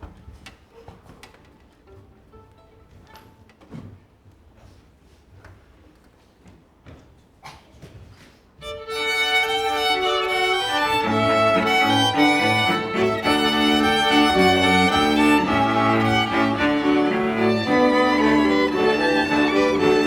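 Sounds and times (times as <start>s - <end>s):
violin playing: 8.6s - 20.0s
low string notes: 8.8s - 20.0s.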